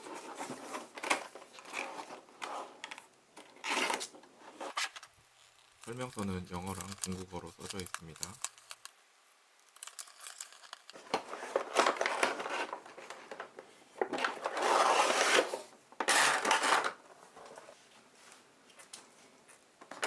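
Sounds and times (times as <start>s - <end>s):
plastic and paper rustling: 4.7s - 12.7s.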